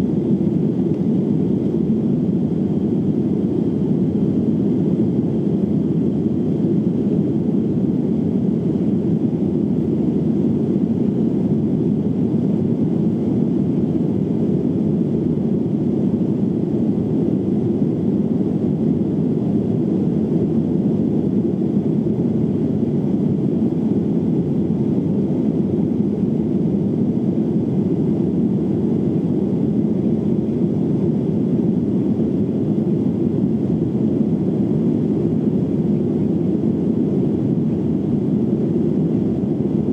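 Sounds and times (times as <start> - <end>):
airliner cabin engine rush: 0.0 - 39.9.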